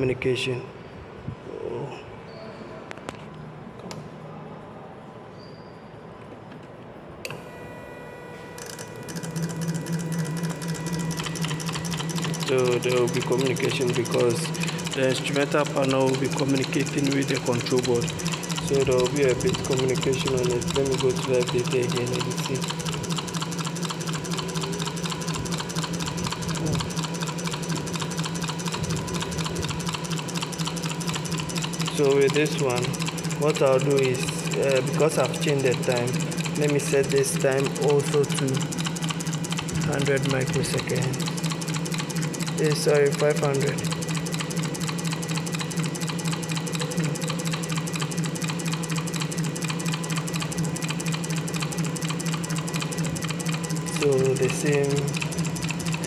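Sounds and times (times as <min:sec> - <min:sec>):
low electrical hum: 0:00.0 - 0:25.6
rapid even ticking: 0:08.6 - 0:56.0.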